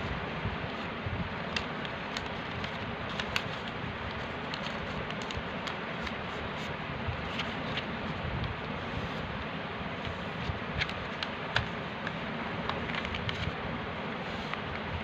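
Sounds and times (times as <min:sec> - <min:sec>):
steady background hiss: 0:00.0 - 0:15.0
paper crackling while folded: 0:01.4 - 0:08.9, 0:10.0 - 0:13.6.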